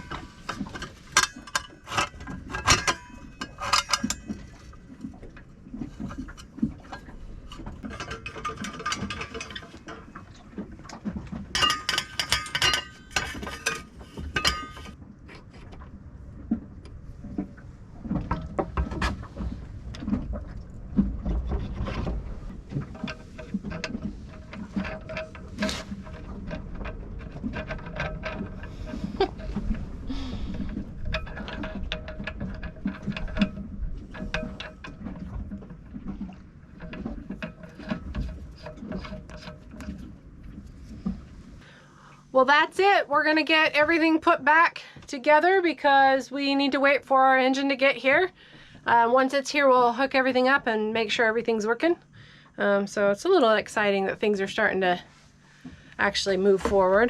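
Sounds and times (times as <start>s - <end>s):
metal parts and tools clinking: 0.0s - 4.7s, 7.8s - 10.1s, 11.6s - 15.0s.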